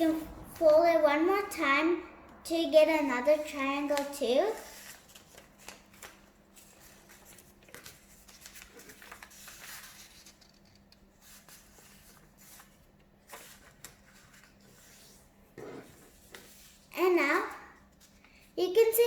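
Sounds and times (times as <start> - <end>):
paper rustling and crinkling: 3.3 - 17.0.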